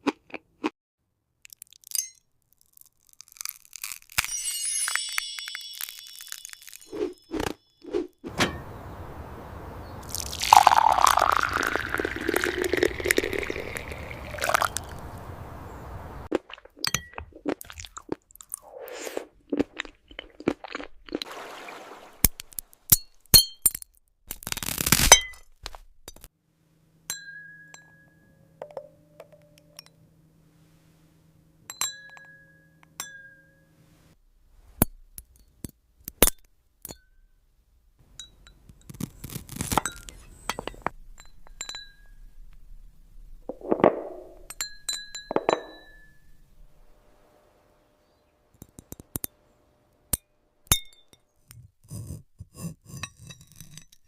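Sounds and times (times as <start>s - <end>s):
glassy clinks and taps: 4.3s - 6.9s, 27.1s - 30.0s, 31.7s - 33.6s, 39.9s - 42.3s, 43.5s - 46.4s
dense crackle: 5.3s - 7.3s
rushing swirling sound: 21.3s - 22.5s.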